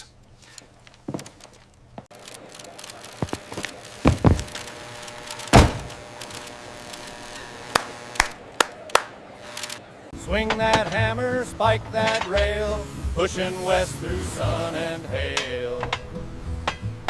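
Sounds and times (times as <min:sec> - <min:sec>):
knocks and thuds: 0:04.0 - 0:04.5, 0:05.5 - 0:06.0.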